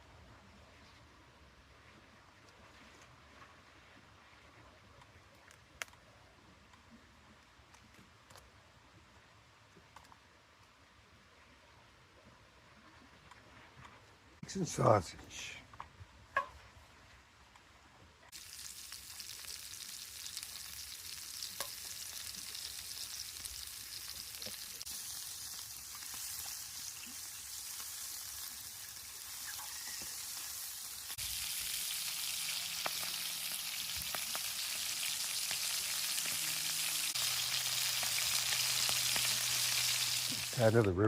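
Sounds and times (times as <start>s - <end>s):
food sizzling in a pan: 18.3s - 40.7s.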